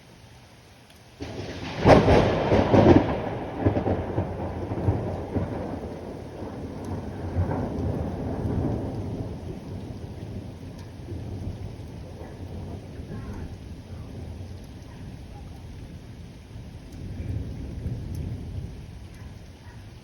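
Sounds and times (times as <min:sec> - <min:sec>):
rain falling: 0:00.0 - 0:20.0
thunder crack and rumble: 0:01.2 - 0:19.5.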